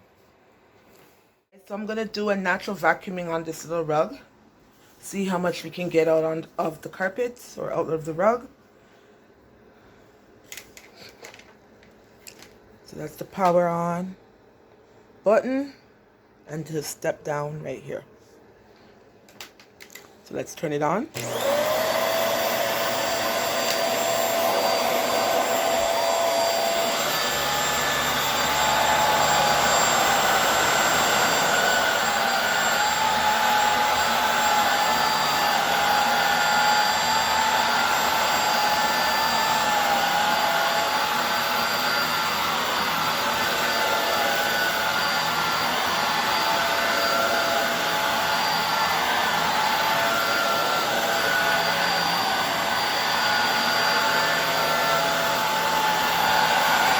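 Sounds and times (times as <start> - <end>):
upright vacuum cleaner running: 21.1 - 56.9.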